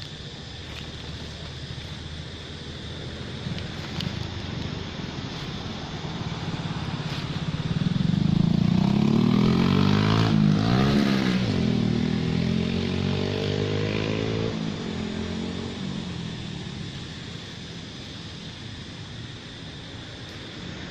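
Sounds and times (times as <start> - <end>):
vehicle engine passing by: 0.7 - 17.2.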